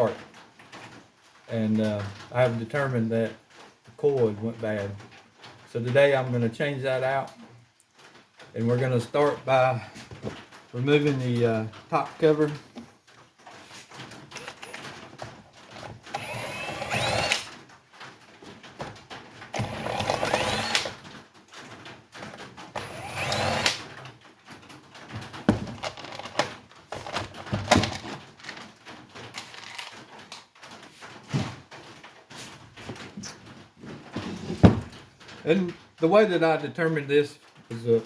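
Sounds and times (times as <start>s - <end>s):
clicks and knocks: 13.9s - 17.6s, 25.0s - 30.4s
small motor whining: 14.4s - 15.0s, 15.7s - 17.6s, 19.5s - 21.0s, 22.8s - 24.0s.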